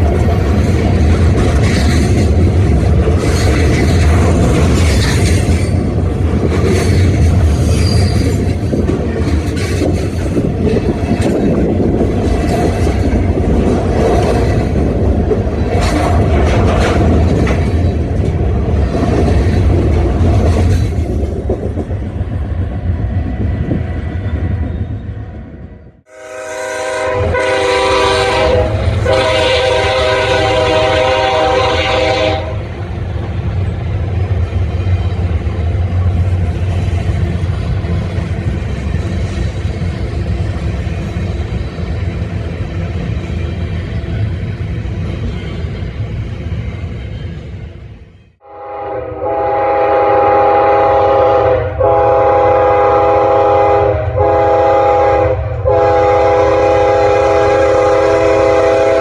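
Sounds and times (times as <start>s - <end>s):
freight train rumbling: 0.0s - 59.0s
locomotive air horn: 26.1s - 32.7s, 48.4s - 59.0s.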